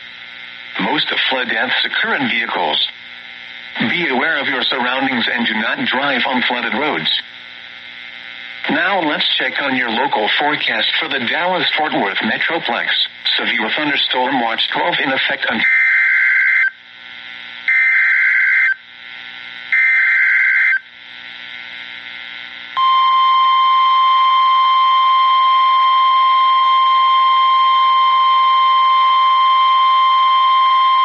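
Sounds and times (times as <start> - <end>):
radio hiss: 0.0 - 15.7
steady warning alarm tone: 15.6 - 16.8, 17.7 - 18.8, 19.7 - 20.9, 22.8 - 31.0.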